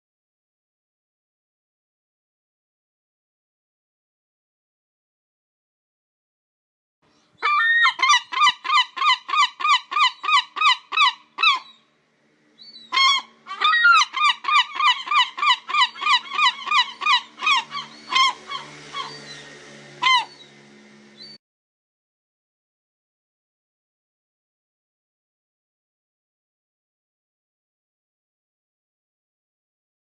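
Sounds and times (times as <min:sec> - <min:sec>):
gull long call yelping: 0:07.4 - 0:11.8, 0:12.9 - 0:19.3, 0:20.0 - 0:20.4.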